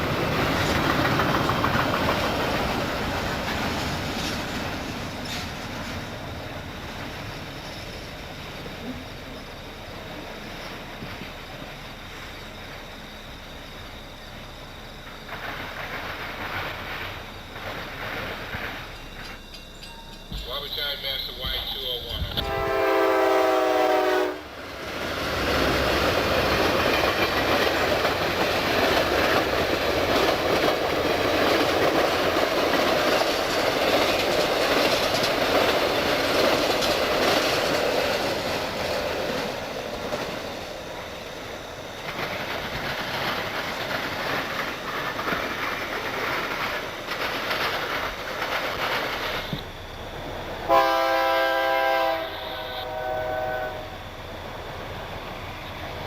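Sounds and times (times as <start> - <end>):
train wheels rumbling on rails: 0.0 - 56.0
train air horn: 22.1 - 24.6, 50.7 - 54.1.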